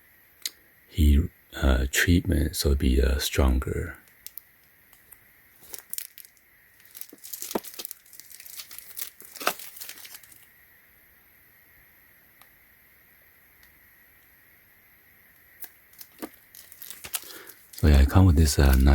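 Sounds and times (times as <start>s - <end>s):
plastic packaging crinkling: 5.0s - 10.5s, 15.6s - 18.9s.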